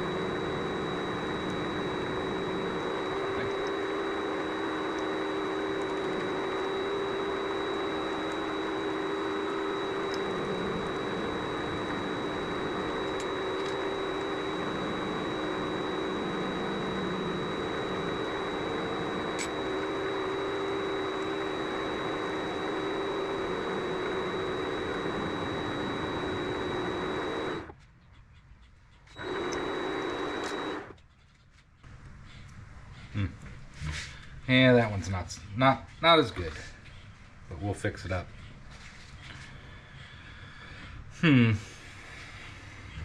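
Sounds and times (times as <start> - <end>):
lathe motor hum and whine: 0.0 - 27.8, 29.1 - 31.0.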